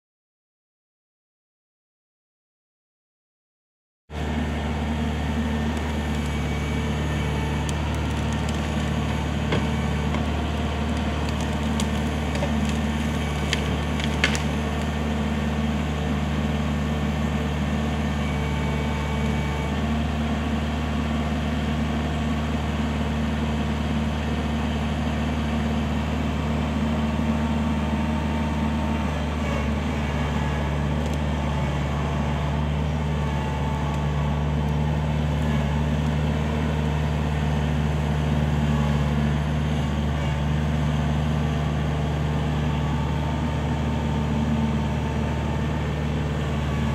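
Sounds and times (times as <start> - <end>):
tractor diesel engine running: 4.1 - 46.9.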